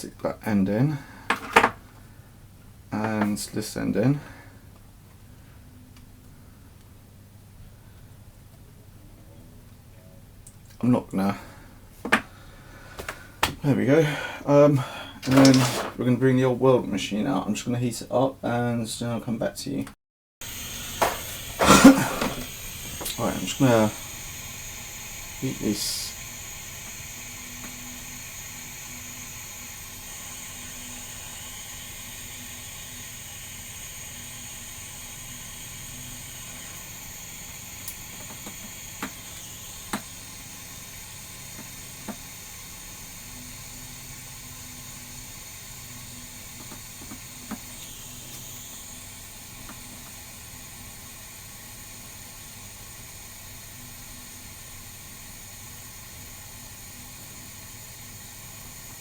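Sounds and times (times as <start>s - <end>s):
torch flame hissing: 11.2s - 16.6s, 20.4s - 59.0s
pipe fittings clicking: 20.5s - 31.4s, 35.0s - 50.2s.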